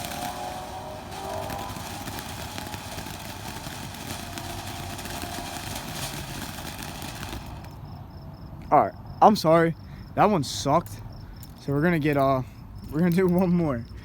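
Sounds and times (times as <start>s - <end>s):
firework fountain hissing: 0.0s - 7.8s
faint crackles: 0.0s - 7.9s.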